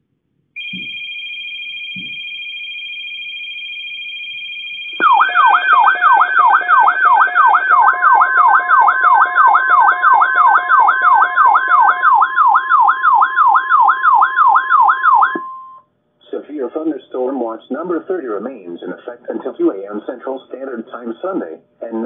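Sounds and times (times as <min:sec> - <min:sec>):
siren-like electronic alert tone: 0:00.6 - 0:15.8
steady two-tone signal: 0:00.6 - 0:15.8
steady alert tone: 0:04.4 - 0:15.8.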